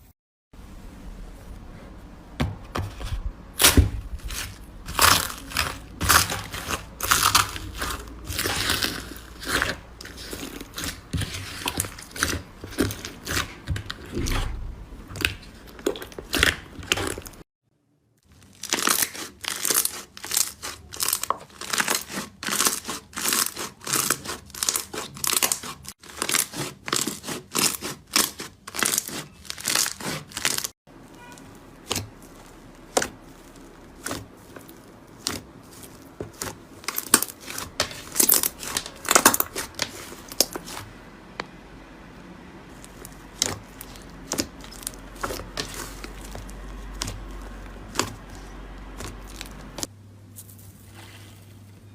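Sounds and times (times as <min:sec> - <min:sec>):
slime crackling and popping: 0:03.6 - 0:17.4, 0:18.2 - 0:40.9.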